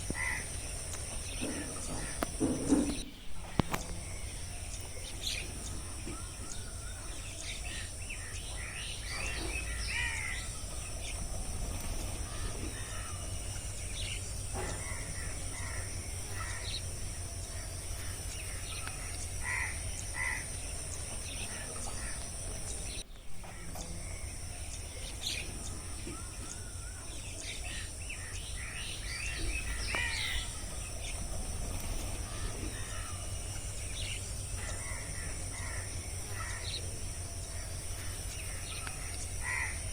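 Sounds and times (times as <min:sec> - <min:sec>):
birds chirping: 0:00.0 - 0:39.9
insect drone: 0:00.0 - 0:39.9
low wind rumble: 0:28.0 - 0:39.9.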